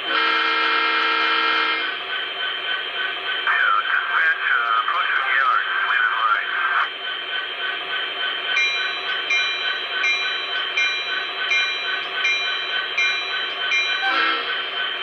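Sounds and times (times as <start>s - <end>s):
ringing strike: 8.6s - 14.6s.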